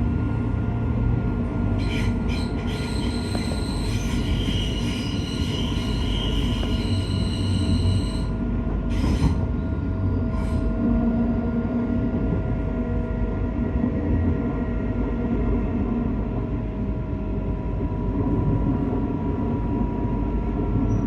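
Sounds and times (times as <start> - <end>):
train rumbling: 0.0 - 21.0
train wheels squealing: 1.7 - 10.8
brief sharp squeals: 1.8 - 8.3.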